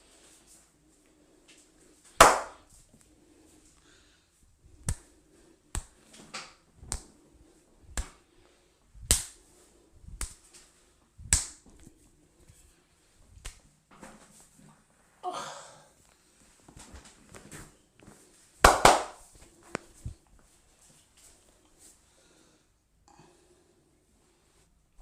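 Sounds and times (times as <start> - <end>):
hand slaps on head: 2.2 - 2.6, 4.8 - 5.1, 5.8 - 7.1, 7.9 - 8.2, 9.0 - 9.4, 10.2 - 10.4, 11.3 - 11.6, 18.6 - 19.2.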